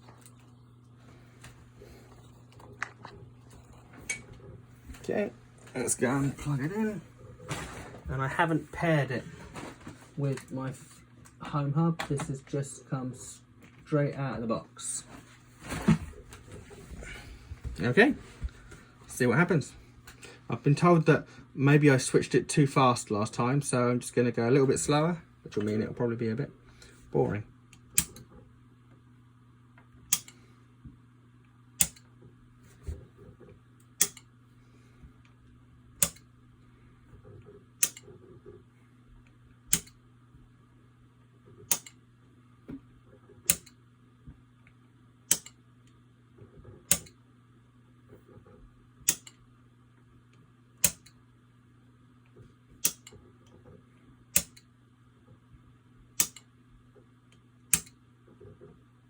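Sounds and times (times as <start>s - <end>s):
faint low hum: 0.0s - 59.0s
light switch clicks: 46.9s - 47.2s, 49.1s - 49.4s, 56.2s - 56.4s, 57.7s - 58.0s.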